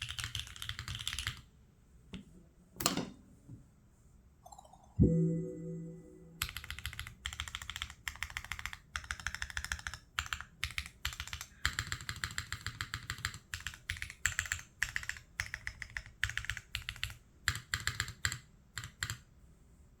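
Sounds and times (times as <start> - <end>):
mechanical keyboard typing: 0.0 - 1.5, 6.4 - 19.2.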